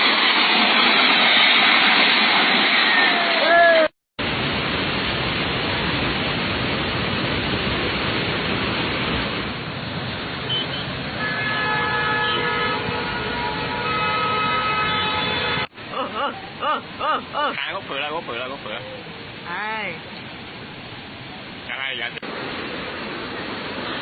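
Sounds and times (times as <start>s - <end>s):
rushing water: 0.0s - 24.0s
car horns: 10.4s - 15.7s.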